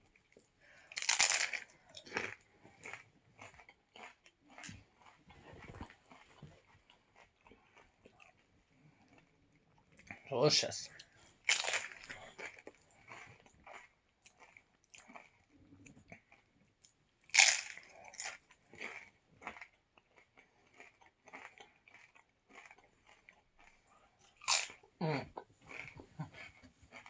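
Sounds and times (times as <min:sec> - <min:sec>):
crunchy chewing: 0:00.1 - 0:10.3, 0:10.9 - 0:27.0
taco shell crunching: 0:00.8 - 0:09.3, 0:11.4 - 0:24.8.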